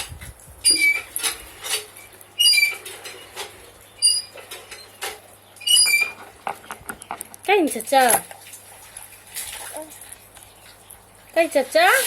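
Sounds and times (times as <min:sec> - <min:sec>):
parrot squeaking: 0:02.4 - 0:02.8, 0:05.6 - 0:06.2.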